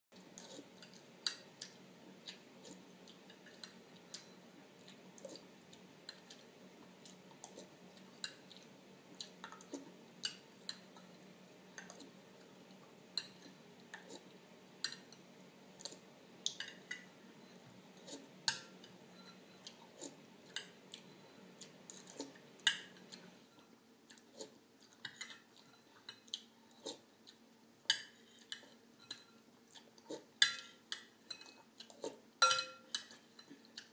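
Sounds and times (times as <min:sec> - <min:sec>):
spoon clinking against bowl: 0:32.4 - 0:33.5.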